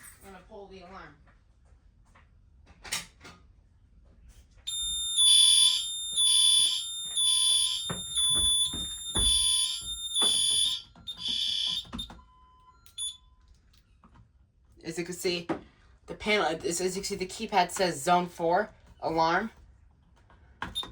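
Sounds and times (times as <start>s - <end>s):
fire alarm pulsing tone: 4.7s - 13.2s
knocks: 7.8s - 12.1s.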